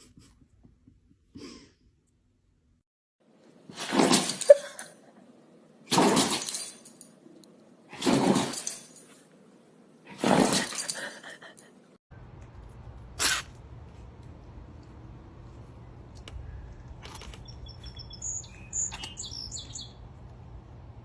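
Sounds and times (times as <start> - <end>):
dog sneezing: 13.2 - 13.5.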